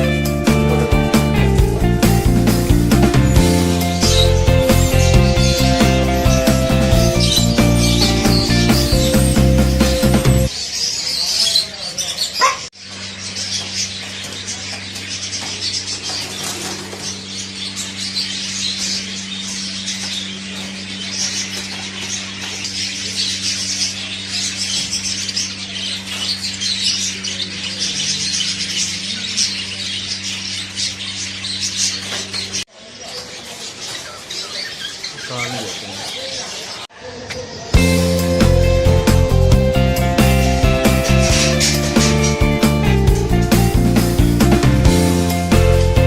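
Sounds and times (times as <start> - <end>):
caged birds chirping: 0.0 - 46.0
steady low hum: 13.0 - 32.6.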